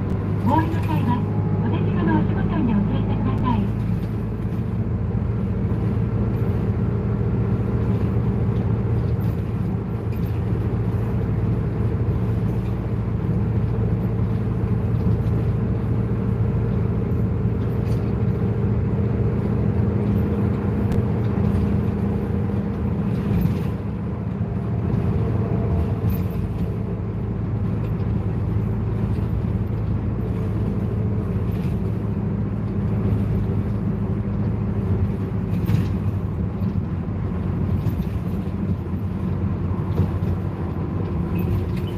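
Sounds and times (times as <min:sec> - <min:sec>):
bus engine drone: 0:00.0 - 0:41.9.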